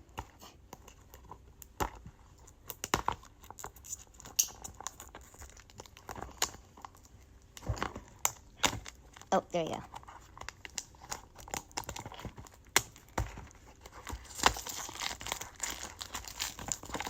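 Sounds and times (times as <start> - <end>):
toy packaging being opened: 13.8 - 17.0.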